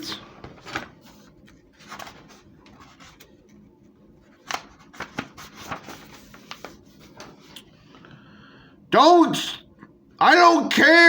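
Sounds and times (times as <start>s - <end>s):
paper pages rustling: 0.2s - 7.7s.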